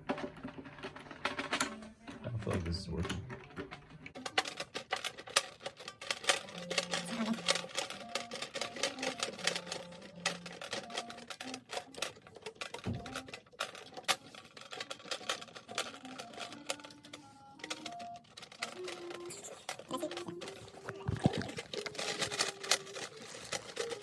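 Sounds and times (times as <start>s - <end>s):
background music with stepping melody: 0.0s - 24.0s.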